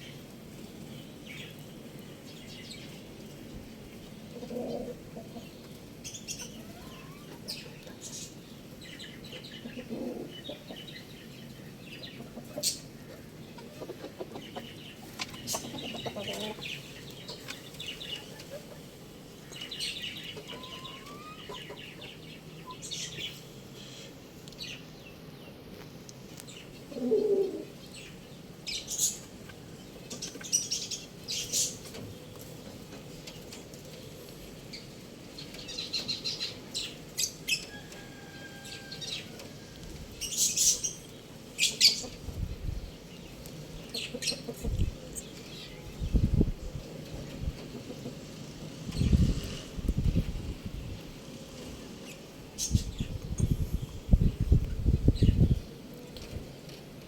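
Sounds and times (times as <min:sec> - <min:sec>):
small birds chirping: 0:00.0 - 0:56.8
chickens clucking: 0:02.6 - 0:24.1, 0:26.7 - 0:56.8
chicken squawk: 0:06.4 - 0:07.6, 0:15.4 - 0:16.6, 0:20.4 - 0:21.8.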